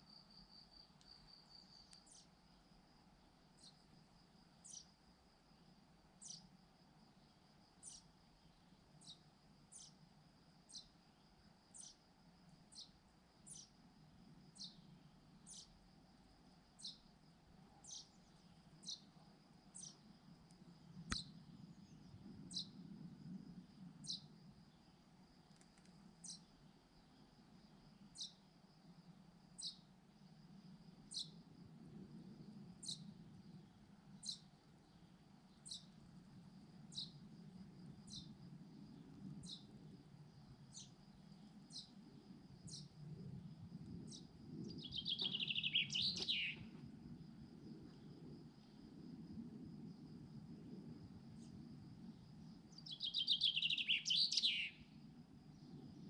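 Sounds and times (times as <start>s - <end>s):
high insect drone: 0.0s - 56.0s
sharp click: 21.1s - 21.3s
bird high falling call: 45.0s - 46.6s.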